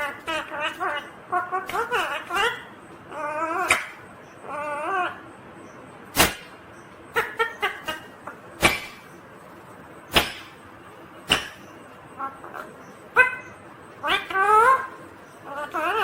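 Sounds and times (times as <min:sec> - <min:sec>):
parrot calling: 0:00.0 - 0:09.2, 0:11.2 - 0:16.0
parrot chirps: 0:00.0 - 0:09.2, 0:11.2 - 0:16.0
parrot screeches: 0:13.2 - 0:16.0.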